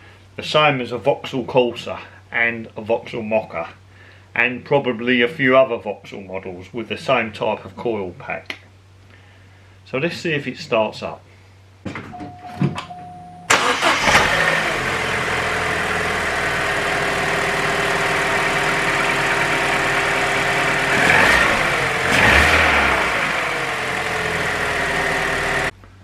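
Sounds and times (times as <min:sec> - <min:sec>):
car engine starting and idling: 0:13.0 - 0:25.7
engine revving: 0:13.5 - 0:25.7.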